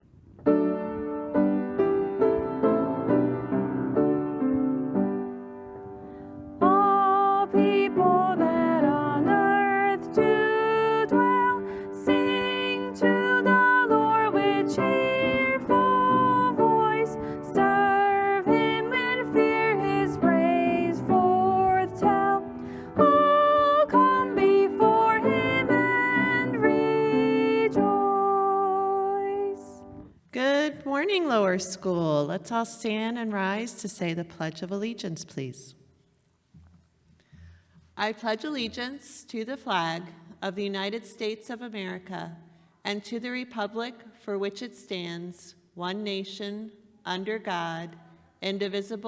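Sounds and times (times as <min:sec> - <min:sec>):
gentle melodic music: 0:00.5 - 0:30.0.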